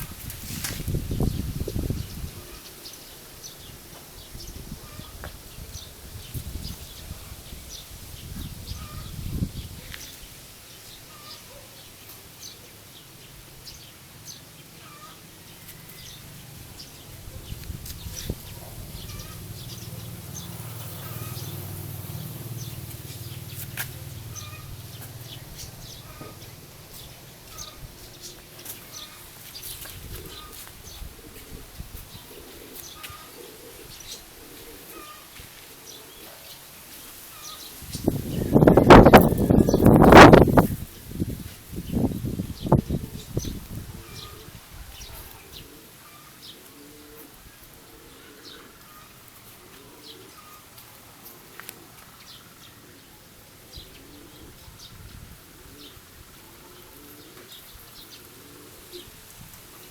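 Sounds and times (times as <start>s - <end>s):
low rumble of wind: 0.0s - 11.2s, 13.2s - 35.0s, 37.3s - 45.7s, 51.8s - 56.9s
birds chirping: 0.0s - 59.2s
pigeon cooing: 1.8s - 2.8s, 16.7s - 36.4s, 42.9s - 54.8s, 55.4s - 59.9s.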